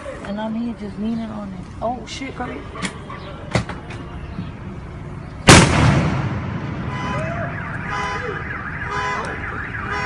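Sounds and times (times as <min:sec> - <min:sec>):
firework explosion: 0:05.5 - 0:07.0
car alarms wailing: 0:06.8 - 0:10.0.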